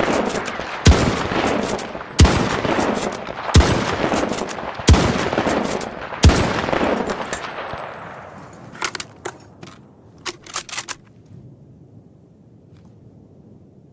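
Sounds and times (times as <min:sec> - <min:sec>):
rifle shot with echo: 0:00.0 - 0:08.4
rifle bolt clicks: 0:08.8 - 0:11.1.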